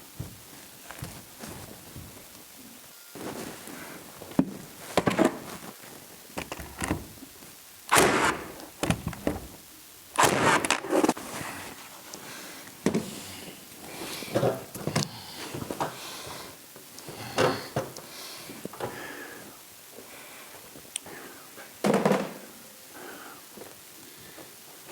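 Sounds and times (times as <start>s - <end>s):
objects knocking and bumping: 21.8s - 22.5s.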